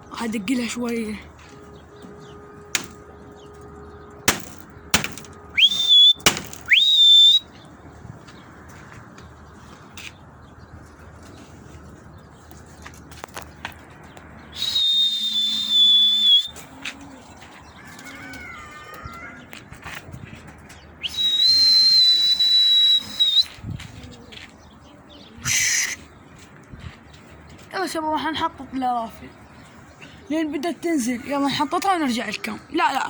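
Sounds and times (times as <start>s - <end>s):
shrill human whistles: 5.5s - 7.5s, 14.5s - 16.6s, 21.0s - 23.6s, 25.4s - 26.0s.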